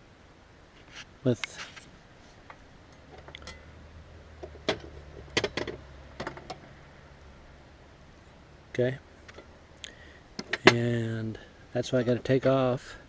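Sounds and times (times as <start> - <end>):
sharp clicks and knocks of hardware: 4.4 - 6.6, 10.4 - 10.8.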